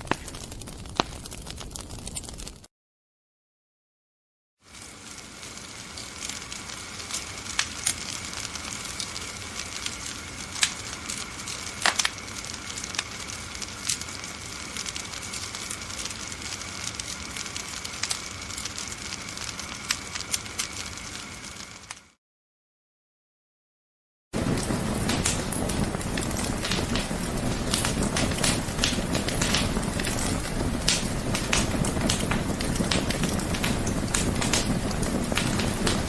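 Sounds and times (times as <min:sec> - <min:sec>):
fire crackling: 0:00.0 - 0:02.7, 0:04.6 - 0:22.2, 0:24.4 - 0:36.0
fire pops and snaps: 0:00.0 - 0:02.7, 0:04.7 - 0:22.2, 0:24.4 - 0:36.0.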